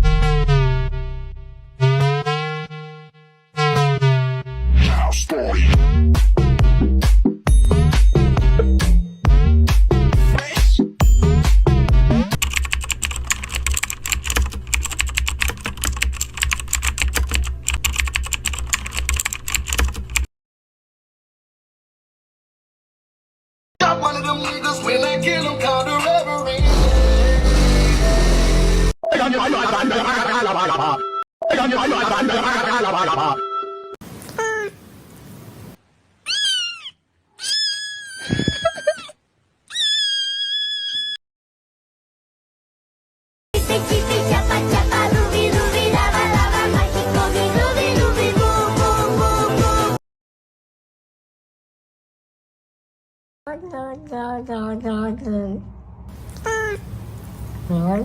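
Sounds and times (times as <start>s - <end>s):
typing on computer keyboard: 12.4s - 20.3s
cat crying: 36.2s - 41.2s, 56.4s - 56.8s.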